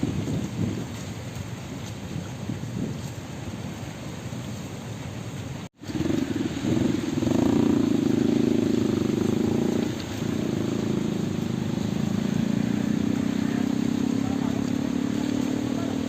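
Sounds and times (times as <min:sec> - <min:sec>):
engine running: 0:05.7 - 0:16.0.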